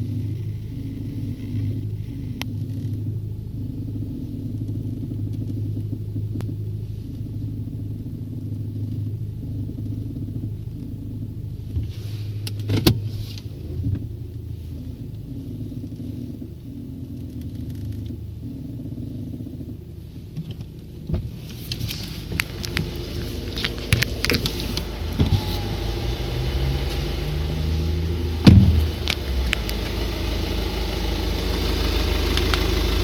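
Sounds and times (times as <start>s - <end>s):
car engine humming: 0.0s - 33.0s
steering creaking: 0.0s - 33.0s
knocks: 28.4s - 29.0s.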